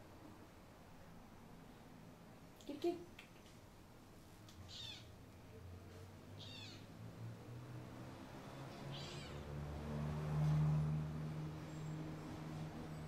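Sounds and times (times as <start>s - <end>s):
kitten meowing: 4.7s - 5.1s, 6.4s - 6.9s, 8.9s - 9.4s.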